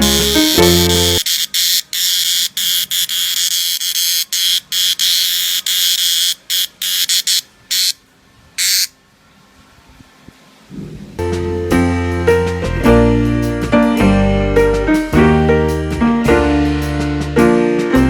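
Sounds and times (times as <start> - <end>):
cicada buzzing: 0.0 - 8.0, 8.6 - 9.0.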